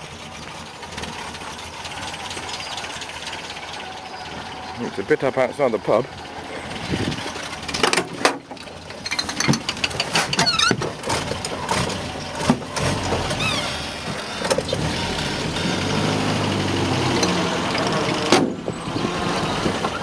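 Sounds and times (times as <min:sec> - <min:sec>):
vehicle engine running: 0:00.0 - 0:20.0
knocks and clicks: 0:07.7 - 0:13.3.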